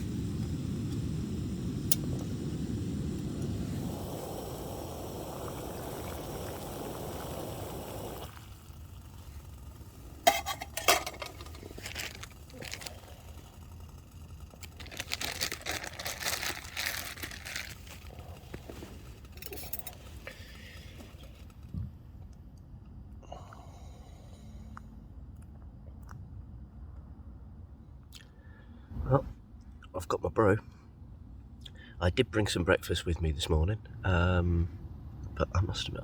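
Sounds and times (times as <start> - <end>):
hot water pouring into mug: 0.0 - 21.6
camping stove burner running: 0.0 - 21.8
pot and mug clinking: 10.2 - 13.3.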